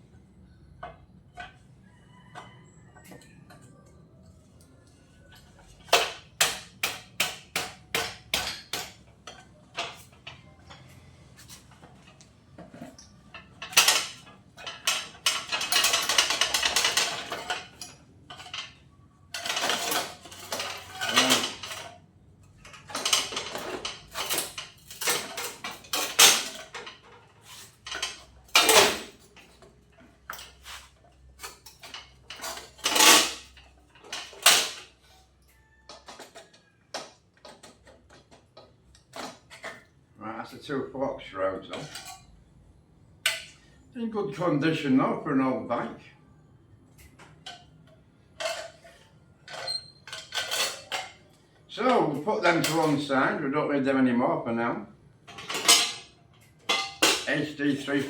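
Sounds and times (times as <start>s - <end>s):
metal tools clinking and clanking: 7.9s - 40.0s, 41.6s - 42.4s, 47.0s - 53.2s, 55.2s - 58.0s
metal scraping and rattling: 8.3s - 35.3s, 48.3s - 51.9s, 55.2s - 58.0s.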